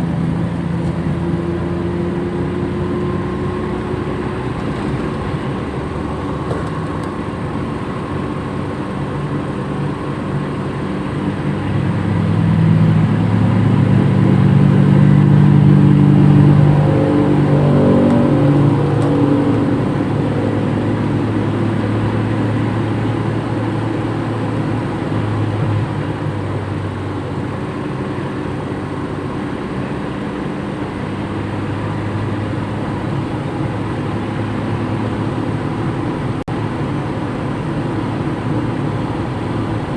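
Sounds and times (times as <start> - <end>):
car engine accelerating: 0.0 - 39.9
road noise: 0.0 - 39.9.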